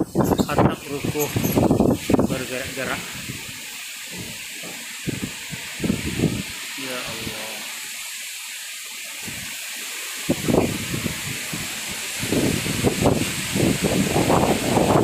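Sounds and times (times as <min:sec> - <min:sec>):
strong wind rushing: 0:00.0 - 0:03.6, 0:05.0 - 0:06.6, 0:10.3 - 0:15.0
wind gusts buffeting microphone: 0:00.0 - 0:03.6, 0:05.0 - 0:06.6, 0:10.2 - 0:15.0.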